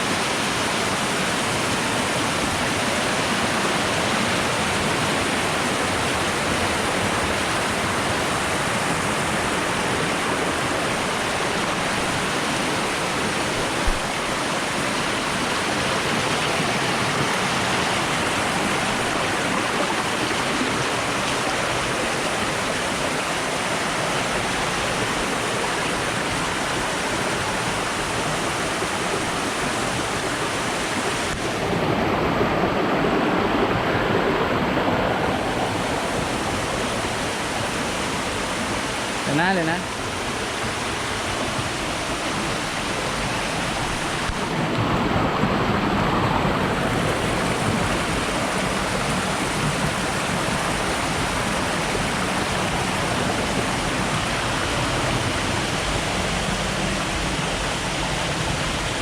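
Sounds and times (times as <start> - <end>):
flowing water rushing: 0.0 - 59.0.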